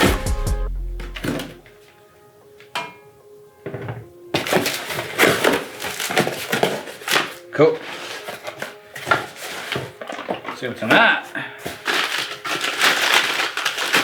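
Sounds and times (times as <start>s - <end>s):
background music: 0.0s - 14.0s
packaging rustling and clattering: 3.6s - 14.0s.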